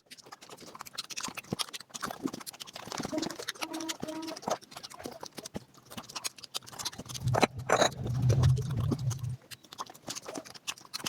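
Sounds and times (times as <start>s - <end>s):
sped up wet chewing: 0.0s - 11.0s
low hum: 6.9s - 9.4s.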